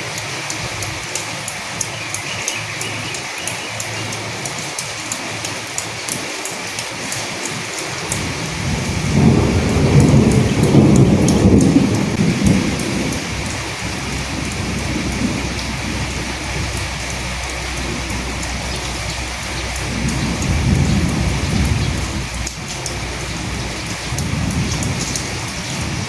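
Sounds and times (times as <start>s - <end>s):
rain pattering: 0.0s - 26.0s
thunder rumbling: 8.0s - 26.0s.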